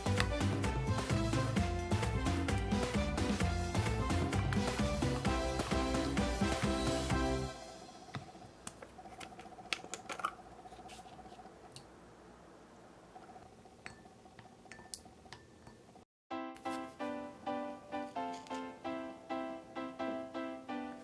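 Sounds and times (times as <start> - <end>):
music: 0.0 - 8.3, 16.3 - 21.0.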